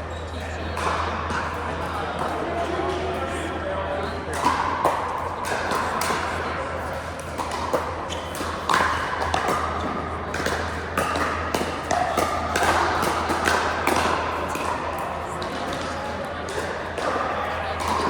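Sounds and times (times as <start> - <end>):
haze of voices: 0.0 - 18.0
balls bouncing: 7.0 - 17.1
paddles striking balls: 7.0 - 18.0.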